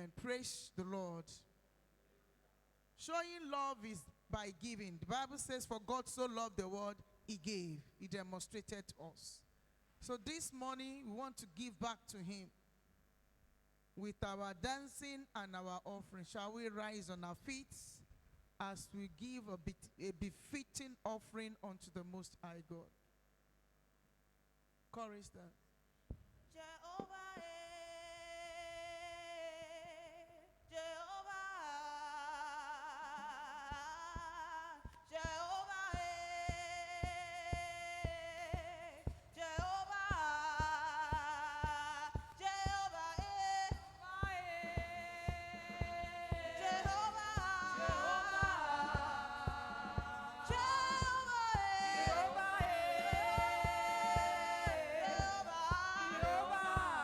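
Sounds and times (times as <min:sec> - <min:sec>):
person singing gospel song: 0:00.0 - 0:01.4, 0:03.0 - 0:09.4, 0:26.5 - 0:57.0
steady drum beat: 0:33.7 - 0:57.0.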